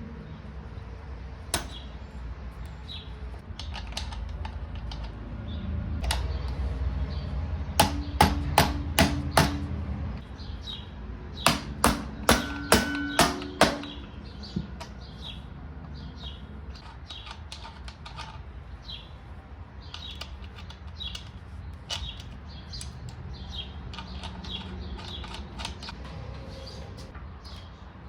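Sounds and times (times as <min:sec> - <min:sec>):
low steady rumble: 0:00.0 - 0:16.8
sharp metallic knocks: 0:01.5 - 0:01.9, 0:07.8 - 0:09.8, 0:11.4 - 0:15.0.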